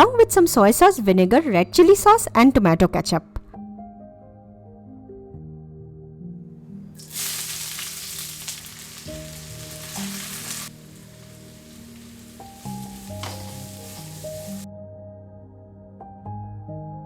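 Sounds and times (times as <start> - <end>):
soft background music: 0.0 - 17.0
food sizzling in hot oil: 7.0 - 14.7.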